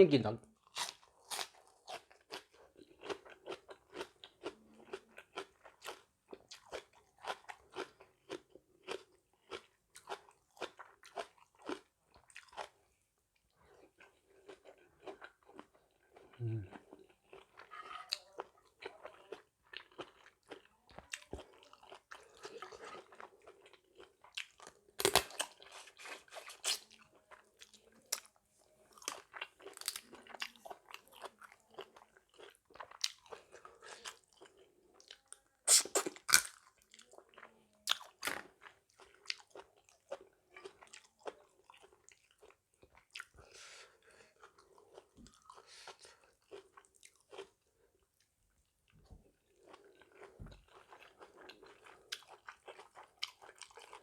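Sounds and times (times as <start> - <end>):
person chewing and crunching food: 0.5 - 54.0.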